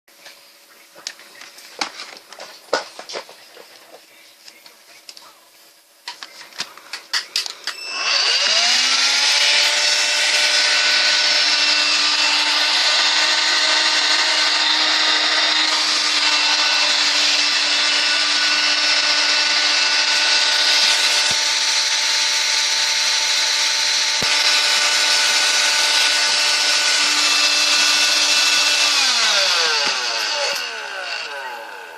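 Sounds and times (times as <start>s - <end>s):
vacuum motor whining: 7.7s - 31.9s.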